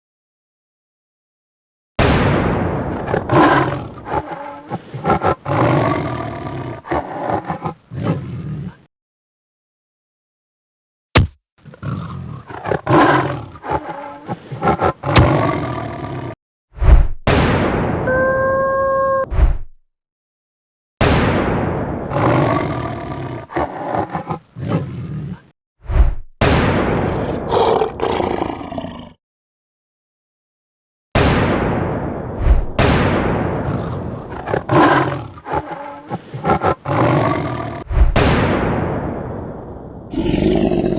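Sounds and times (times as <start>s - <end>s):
loud animal roars: 11.8s - 16.4s, 22.1s - 25.5s, 27.4s - 29.2s, 34.5s - 37.8s, 40.1s - 40.9s
cartoon animal roar: 18.1s - 19.2s, 40.1s - 40.9s.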